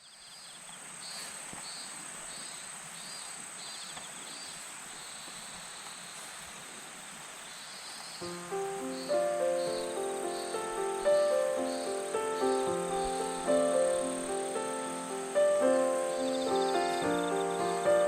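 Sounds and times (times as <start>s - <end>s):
insect chirps: 0.0s - 18.0s
insects trilling: 0.0s - 18.0s
music: 8.2s - 18.0s.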